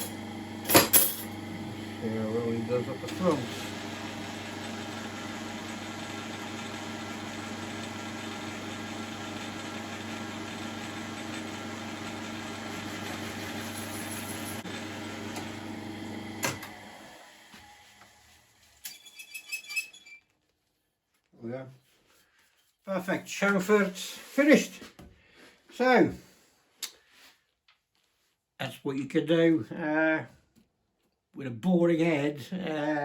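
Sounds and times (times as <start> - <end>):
lathe running: 0.0 - 18.2.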